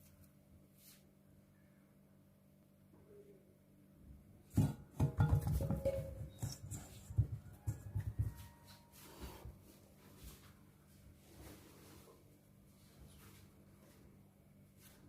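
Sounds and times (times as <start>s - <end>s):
bowl knocking and clattering: 4.5s - 8.4s.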